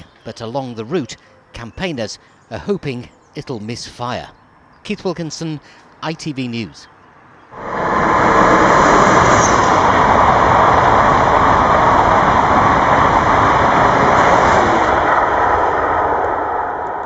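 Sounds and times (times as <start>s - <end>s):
passing vehicle rushing: 7.5s - 17.0s.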